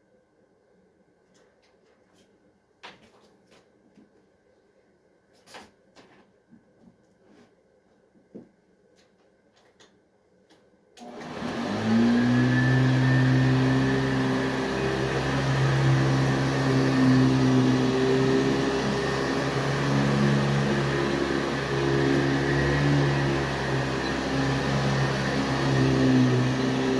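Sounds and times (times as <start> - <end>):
vacuum cleaner motor whine: 11.0 - 26.9.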